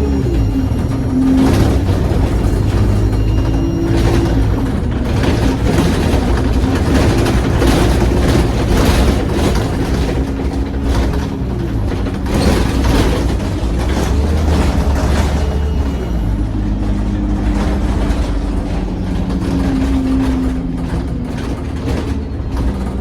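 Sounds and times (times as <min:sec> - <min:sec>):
bus diesel engine running: 0:00.0 - 0:23.0
road noise: 0:00.0 - 0:23.0
rattles: 0:00.4 - 0:23.0.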